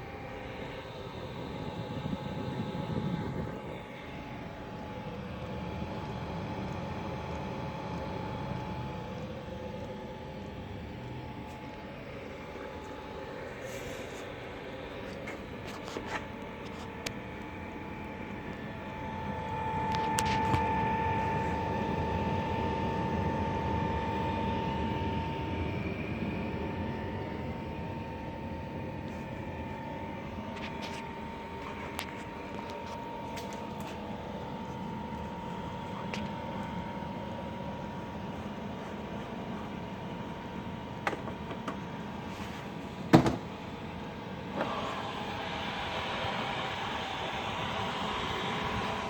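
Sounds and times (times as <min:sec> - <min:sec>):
diesel air heater running: 0:00.0 - 0:49.0
motor whine: 0:00.0 - 0:49.0.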